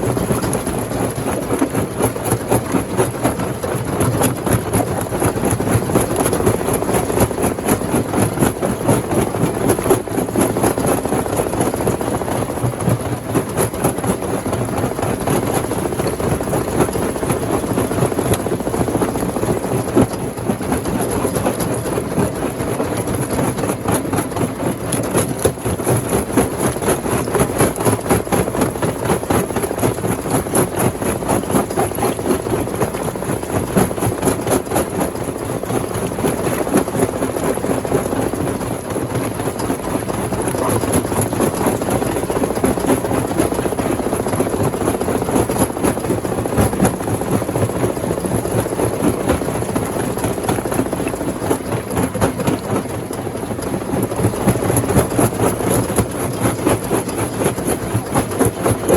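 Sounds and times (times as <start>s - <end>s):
engine drone: 48.6s - 58.9s.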